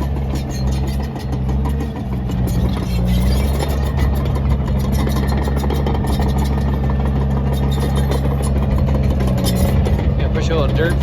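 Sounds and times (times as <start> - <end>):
bulldozer diesel engine running: 0.0 - 11.0.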